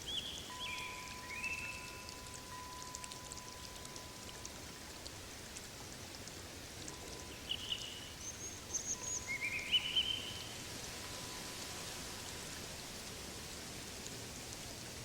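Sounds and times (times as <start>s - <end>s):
steady rain hiss: 0.0s - 15.0s
water drips: 0.0s - 15.0s
bird chirps and trills: 0.1s - 2.1s, 7.3s - 10.6s.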